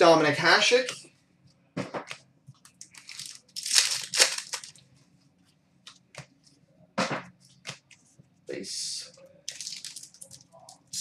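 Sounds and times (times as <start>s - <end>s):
foil wrappers snapping and rustling: 2.7s - 4.8s, 9.5s - 10.4s.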